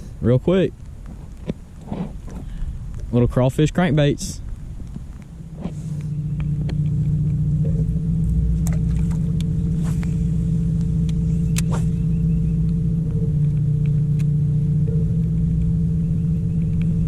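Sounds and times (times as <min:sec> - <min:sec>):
boat motor running: 0:04.4 - 0:17.0.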